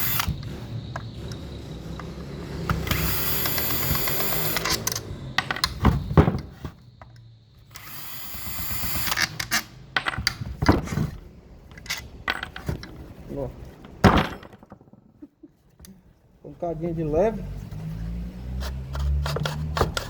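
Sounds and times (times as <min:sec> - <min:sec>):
power drill-driver running: 0:00.0 - 0:00.5, 0:02.6 - 0:05.1, 0:07.7 - 0:09.5.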